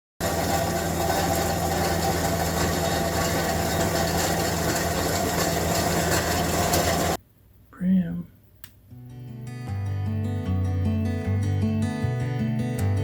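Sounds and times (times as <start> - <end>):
heavy machine engine running: 0.2 - 7.2.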